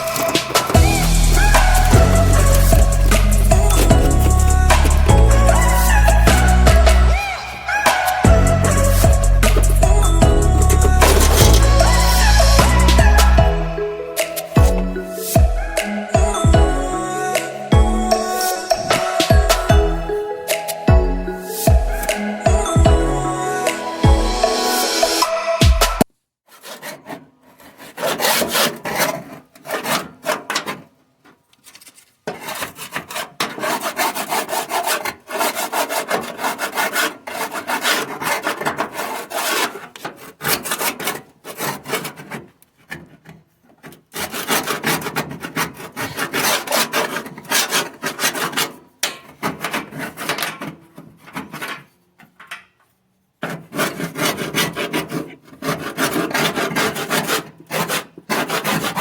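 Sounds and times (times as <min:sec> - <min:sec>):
hand sanding strokes: 0:00.0 - 0:15.9, 0:32.3 - 0:42.4, 0:43.9 - 0:48.8, 0:53.4 - 0:59.0.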